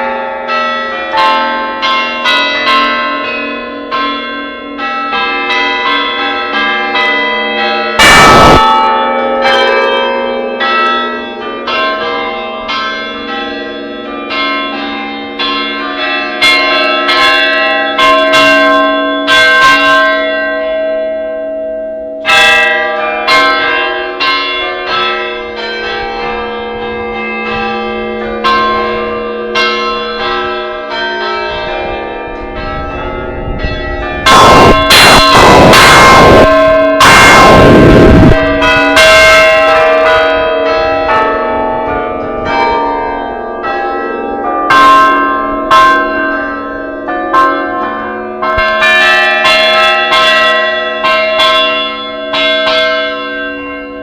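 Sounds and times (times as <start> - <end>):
church bells pealing: 0.0 - 54.0.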